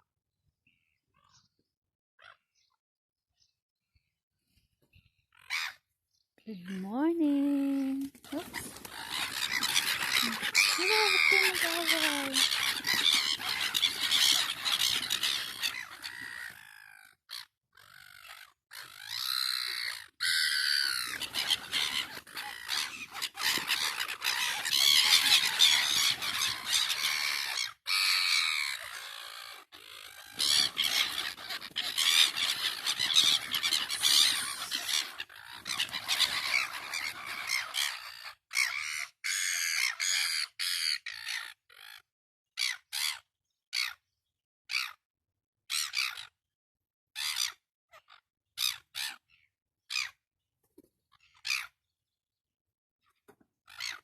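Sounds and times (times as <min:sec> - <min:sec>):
gulls calling and squawking: 0:05.0 - 0:05.9, 0:06.5 - 0:42.0, 0:51.4 - 0:51.8, 0:53.7 - 0:54.0.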